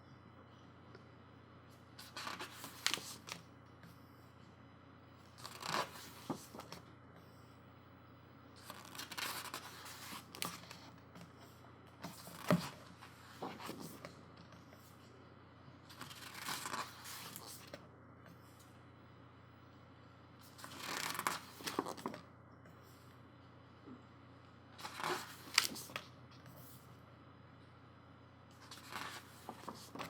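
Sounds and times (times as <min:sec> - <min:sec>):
book pages turning: 0:02.0 - 0:03.4, 0:05.3 - 0:06.8, 0:08.6 - 0:10.9, 0:12.0 - 0:14.1, 0:15.9 - 0:17.8, 0:20.4 - 0:22.2, 0:24.8 - 0:26.1, 0:28.6 - 0:30.0.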